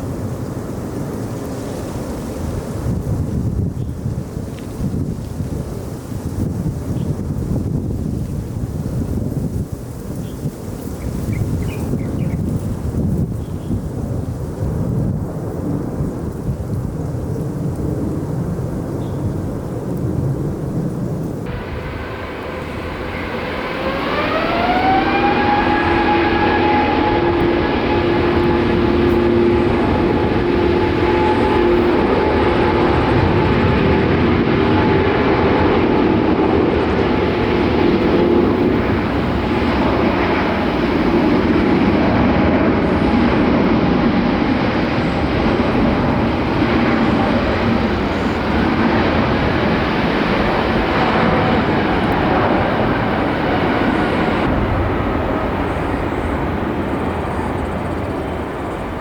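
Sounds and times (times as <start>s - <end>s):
jet engine whine: 0.0s - 59.0s
jet engines roaring: 0.0s - 59.0s
low hum: 21.4s - 42.9s.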